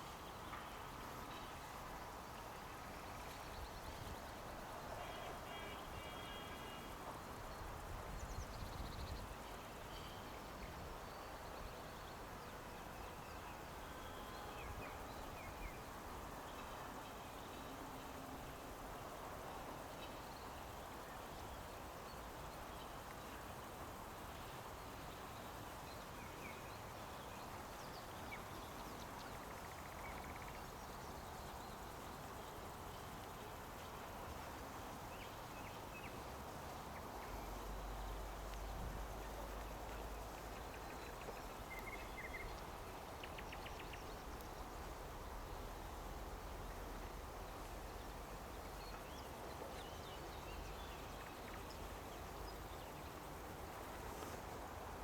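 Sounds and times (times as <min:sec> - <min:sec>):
steady background hiss: 0:00.0 - 0:55.0
wind rumble on microphone: 0:07.4 - 0:09.4.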